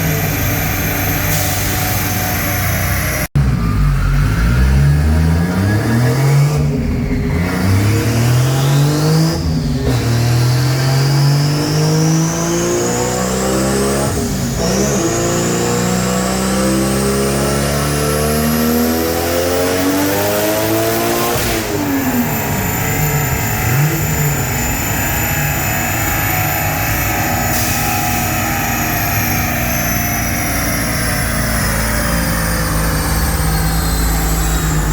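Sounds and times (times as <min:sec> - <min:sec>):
car engine revving at full throttle: 0:00.0 - 0:34.9
turbo whine: 0:21.0 - 0:34.9.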